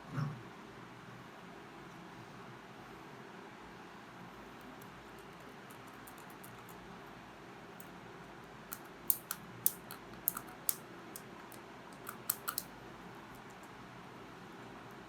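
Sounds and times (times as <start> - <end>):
small tools clicking and tapping: 4.7 - 6.8, 8.7 - 12.7.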